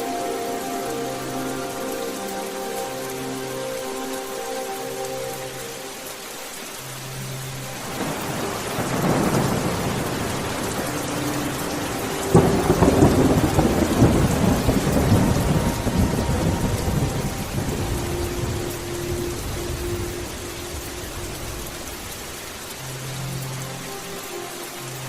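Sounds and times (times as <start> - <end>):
steady rain: 0.0 - 25.0
rolling thunder rumble: 7.8 - 22.3
thunderclap: 12.3 - 18.6.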